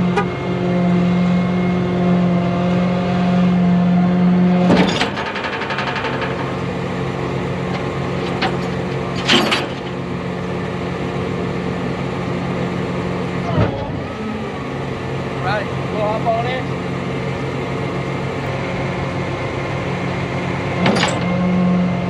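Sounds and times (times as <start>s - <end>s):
truck engine droning: 0.0s - 22.0s
loud clunk: 4.6s - 7.0s, 7.6s - 10.0s, 20.8s - 21.5s.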